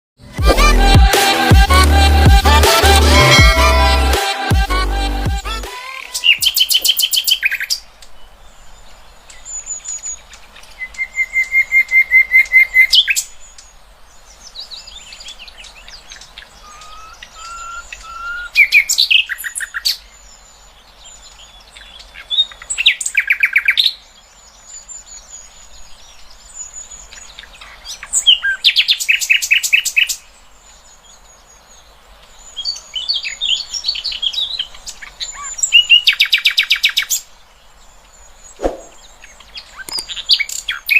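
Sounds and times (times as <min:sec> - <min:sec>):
whistled bird notes: 0:05.8 - 0:07.7, 0:14.8 - 0:19.9, 0:38.4 - 0:40.9
high bird chips and twitters: 0:05.9 - 0:07.8.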